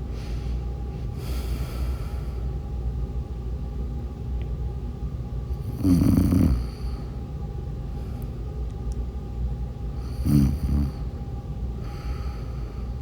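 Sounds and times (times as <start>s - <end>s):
person snoring: 5.7s - 6.9s, 10.0s - 11.0s.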